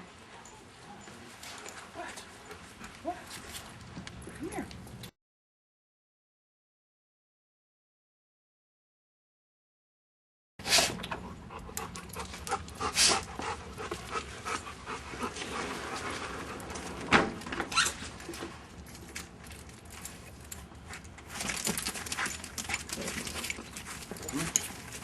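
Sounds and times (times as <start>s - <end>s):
dog panting: 11.1s - 16.8s.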